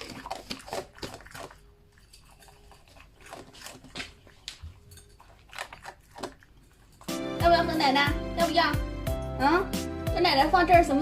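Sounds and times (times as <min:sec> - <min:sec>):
dog crunching dry kibble: 0:00.0 - 0:07.2.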